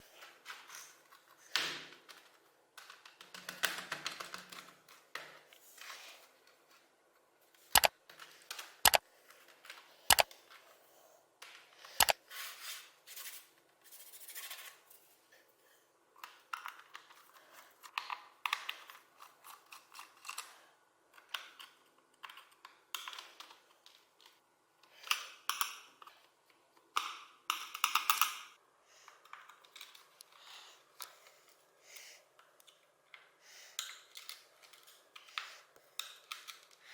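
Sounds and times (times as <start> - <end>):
mechanical keyboard clicks and rattles: 2.1 - 5.0, 8.5 - 9.0.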